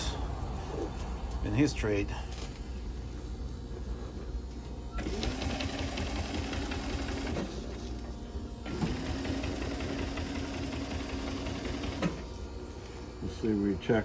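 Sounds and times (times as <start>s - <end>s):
sewing machine running: 5.0s - 7.6s, 8.6s - 12.2s.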